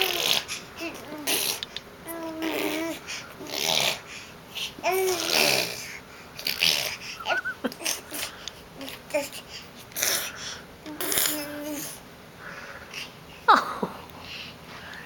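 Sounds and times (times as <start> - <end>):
baby babbling: 0.0 - 4.0, 4.8 - 5.8, 10.9 - 12.0.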